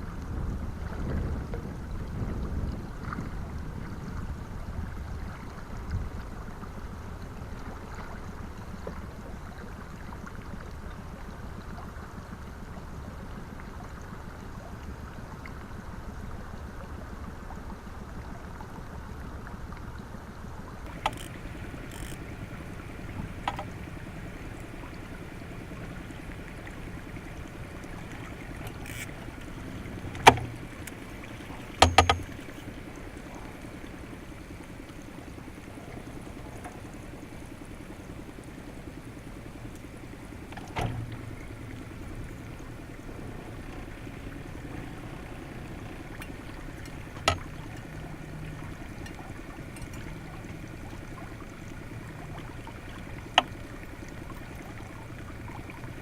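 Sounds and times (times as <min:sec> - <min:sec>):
boat in windy water: 0:00.0 - 0:56.0
sharp knocks: 0:30.1 - 0:30.6, 0:31.8 - 0:32.5.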